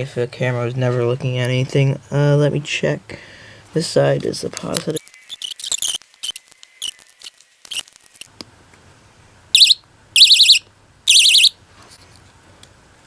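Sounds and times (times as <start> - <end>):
door alarm siren shrieking: 9.6 - 11.5.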